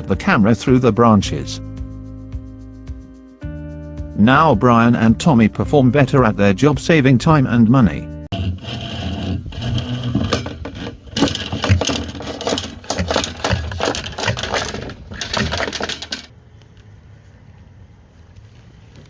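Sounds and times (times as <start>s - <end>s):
mechanical clattering: 8.3s - 16.3s.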